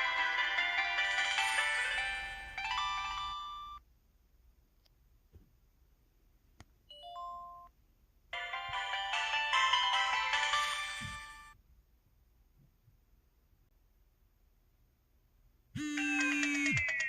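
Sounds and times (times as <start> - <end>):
electronic phone melody: 0.0 - 3.8, 8.4 - 11.5, 15.8 - 17.0.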